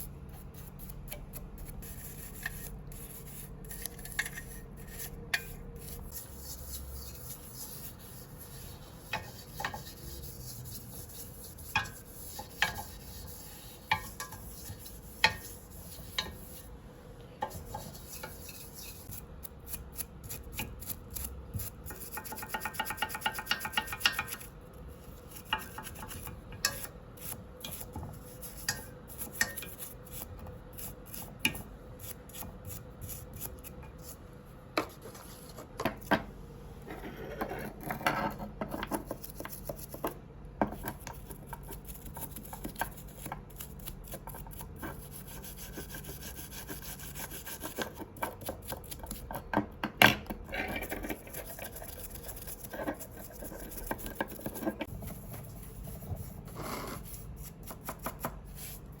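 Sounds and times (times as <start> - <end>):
hand scrubbing metal: 1.8 - 16.7, 17.4 - 24.5.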